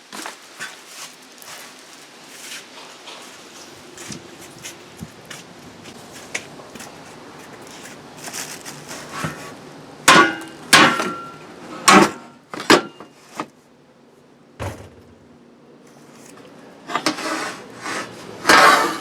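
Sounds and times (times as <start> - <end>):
dull thud: 14.6 - 15.3.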